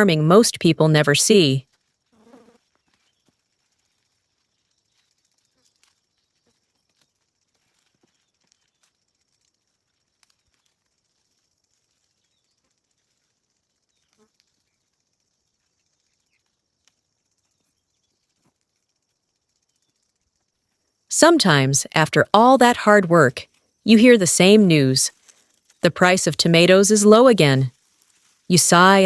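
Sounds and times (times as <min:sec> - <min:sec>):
faint ticks: 0:01.8 - 0:21.1.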